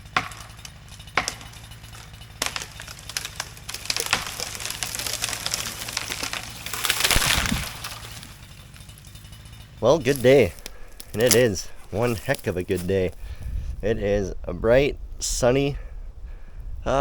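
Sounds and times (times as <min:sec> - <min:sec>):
tree crashing through branches: 0:00.0 - 0:13.5
wood cracking and splintering: 0:00.0 - 0:13.5.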